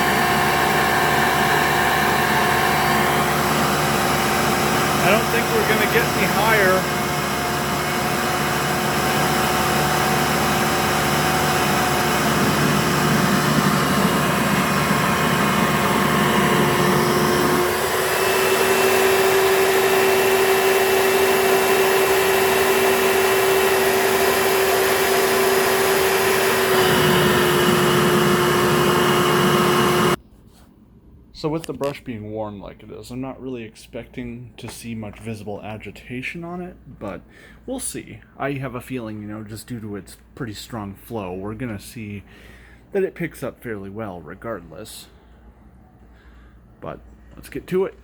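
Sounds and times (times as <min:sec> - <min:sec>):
vacuum cleaner motor whining: 0:00.0 - 0:30.2.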